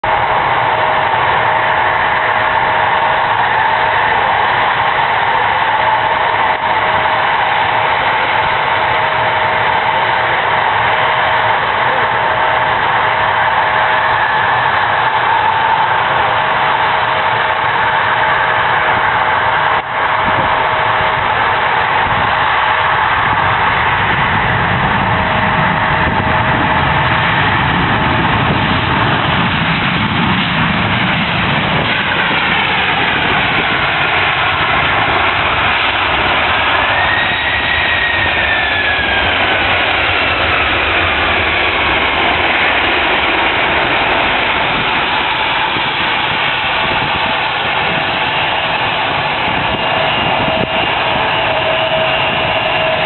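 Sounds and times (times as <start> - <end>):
falling jet whine: 0.0 - 53.0
jet engines roaring past: 0.0 - 53.0.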